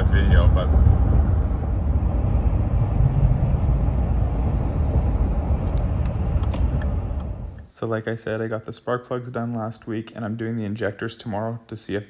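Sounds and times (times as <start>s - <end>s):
road noise: 0.0s - 7.7s
truck engine rumble: 0.0s - 7.7s.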